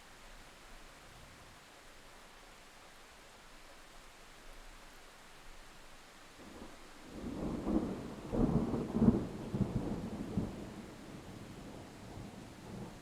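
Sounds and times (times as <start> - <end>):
faint rain hiss: 0.0 - 13.0
thunder rumbling: 7.1 - 13.0.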